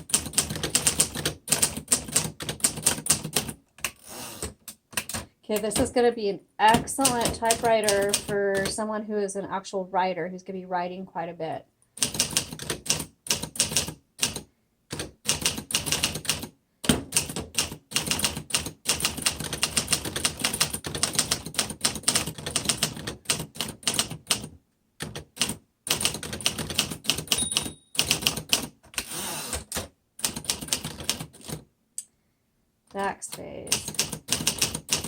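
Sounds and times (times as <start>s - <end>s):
manual typewriter key strikes: 26.0s - 28.7s.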